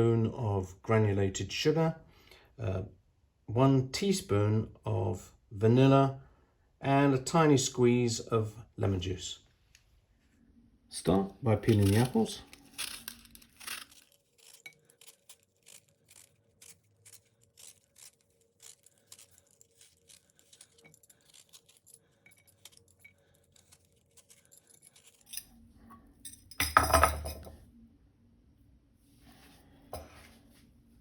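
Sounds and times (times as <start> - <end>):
apple peeling scrapes: 11.5 - 25.4
hard object clattering down: 26.5 - 27.5.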